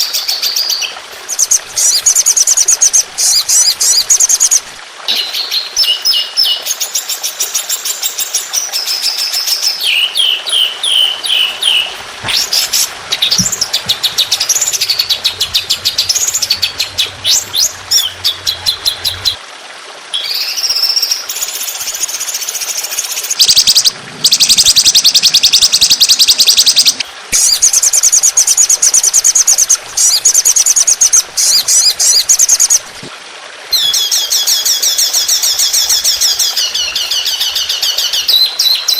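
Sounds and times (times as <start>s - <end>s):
songbird rapid chirps and trills: 0.1s - 19.4s.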